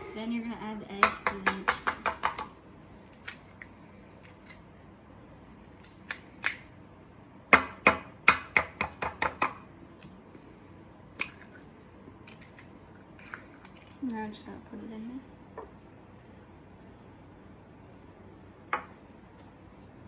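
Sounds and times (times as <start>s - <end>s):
kitchenware tapping and clicking: 1.0s - 2.5s, 7.5s - 9.6s.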